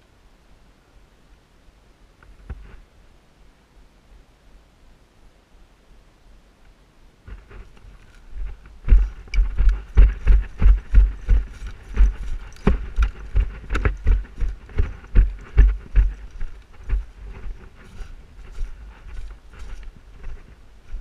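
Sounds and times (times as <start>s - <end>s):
gear jostling: 7.3s - 21.0s
running footsteps: 7.3s - 21.0s.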